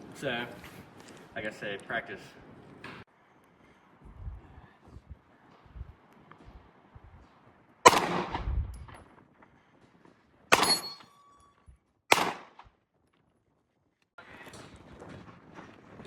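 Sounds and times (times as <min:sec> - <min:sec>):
pistol shots: 0:07.8 - 0:08.6, 0:10.5 - 0:11.1, 0:12.1 - 0:12.7.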